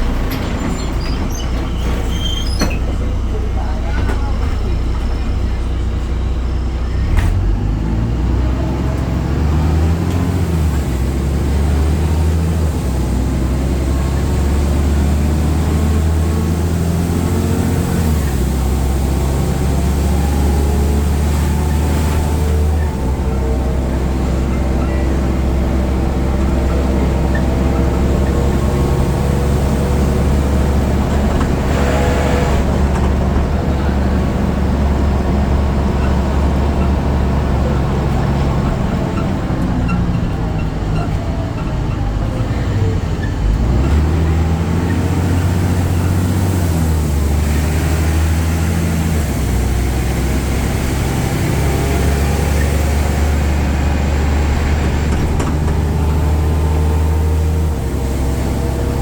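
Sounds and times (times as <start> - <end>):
bus diesel engine driving: 0.0 - 59.0.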